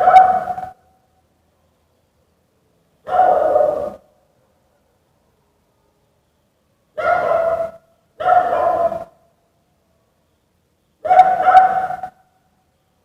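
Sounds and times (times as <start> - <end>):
dog barking angrily: 0.0 - 0.7, 3.1 - 4.0, 7.0 - 9.1, 11.0 - 12.2.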